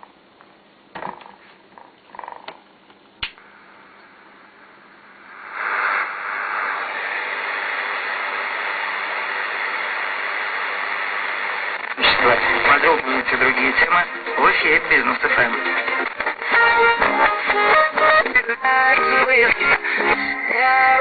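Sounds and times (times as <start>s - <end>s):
radio crackles: 0.9s - 21.0s
radio click: 3.2s - 3.4s, 5.5s - 16.6s
radio static hiss: 3.3s - 21.0s.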